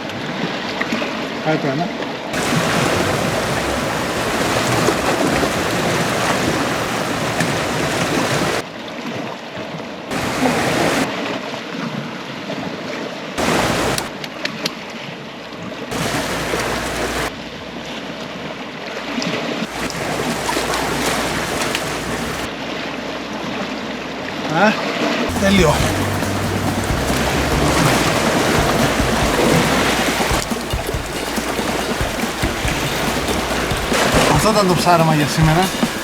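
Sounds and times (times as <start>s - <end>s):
surf: 2.4s - 8.6s, 10.1s - 11.1s, 13.4s - 14.1s, 15.9s - 17.3s, 19.7s - 22.5s, 25.3s - 36.0s.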